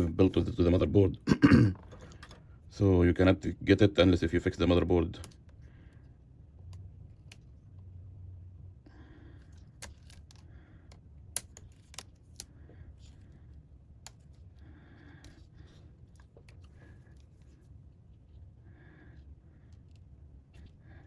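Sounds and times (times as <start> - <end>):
faint low hum: 0.0 - 21.0
small tools clicking and tapping: 1.8 - 2.4, 9.5 - 13.2.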